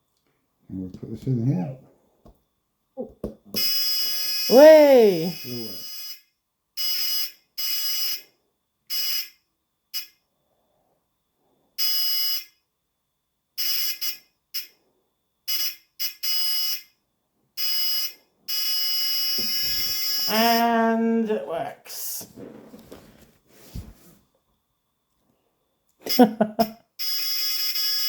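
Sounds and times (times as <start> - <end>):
electronic buzzer tone: 3.6 - 6.2, 6.8 - 8.2, 8.9 - 9.4, 11.8 - 12.6, 13.6 - 14.7, 15.5 - 16.9, 17.6 - 20.7, 27.0 - 28.0.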